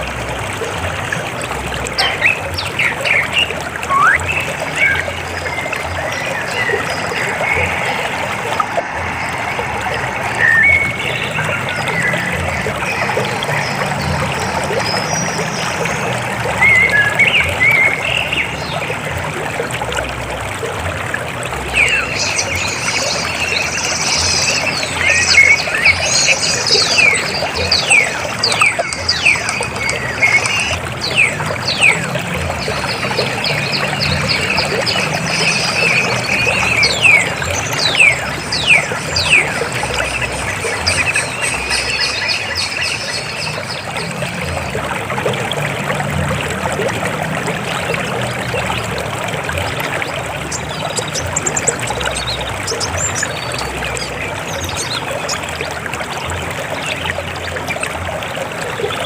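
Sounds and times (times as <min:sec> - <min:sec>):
river water flowing: 0:00.0 - 0:59.0.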